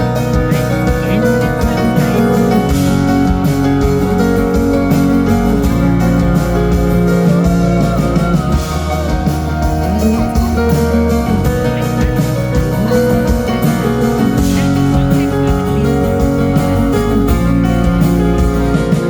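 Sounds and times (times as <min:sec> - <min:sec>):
bass line: 0:00.0 - 0:19.0
strummed and plucked guitars: 0:00.0 - 0:19.0.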